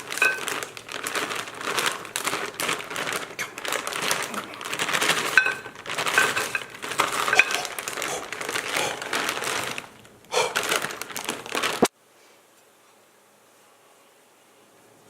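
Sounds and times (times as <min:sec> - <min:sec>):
plastic bag crackling: 0:00.0 - 0:11.9.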